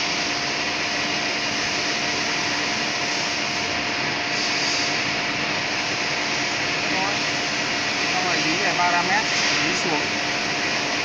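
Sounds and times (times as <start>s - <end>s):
machinery hiss and hum: 0.0s - 11.0s.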